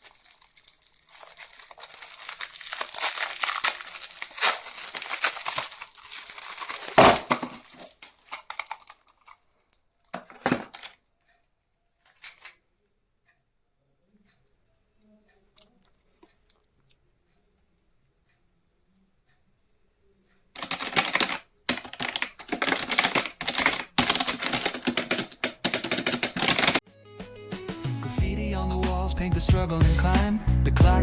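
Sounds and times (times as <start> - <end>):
packaging crinkling and tearing: 0.0 - 9.5, 10.2 - 11.0, 12.1 - 12.6, 20.6 - 26.8.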